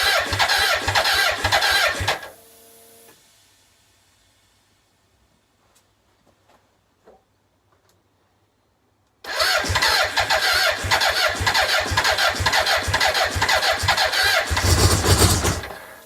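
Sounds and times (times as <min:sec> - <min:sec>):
electric starter cranking engine: 0:00.0 - 0:02.4, 0:09.3 - 0:16.0.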